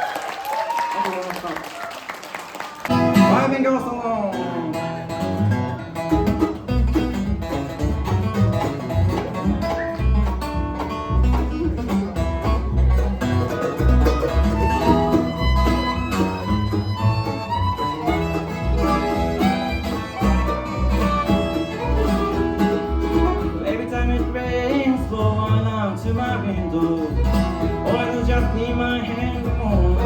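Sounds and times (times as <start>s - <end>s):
guitar: 2.6s - 30.0s
banjo: 4.7s - 30.0s
fiddle: 4.9s - 30.0s
pulsing bass line: 6.2s - 30.0s.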